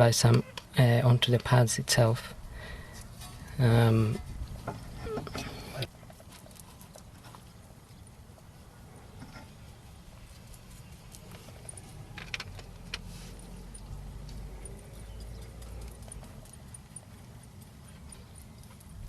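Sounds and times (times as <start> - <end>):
brake pads clicking and knocking: 11.1 - 13.1.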